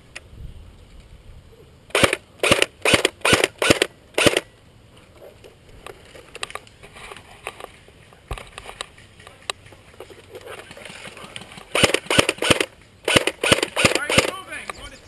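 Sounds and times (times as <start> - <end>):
airsoft gun shots: 1.9 - 4.5, 11.7 - 14.4.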